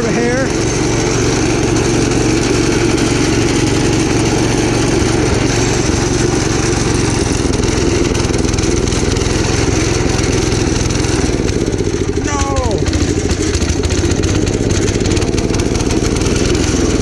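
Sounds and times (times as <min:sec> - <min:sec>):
tractor engine running: 0:00.0 - 0:17.0.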